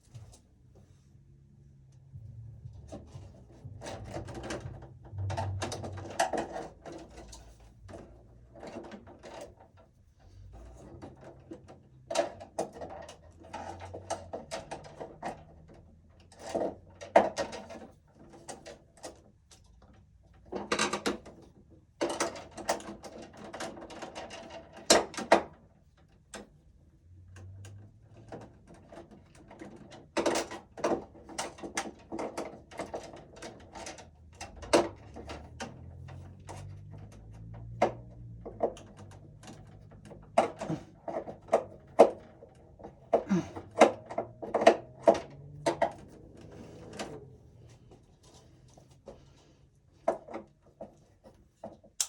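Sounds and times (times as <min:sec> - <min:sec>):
wires and metal parts rattling: 0:02.1 - 0:09.9.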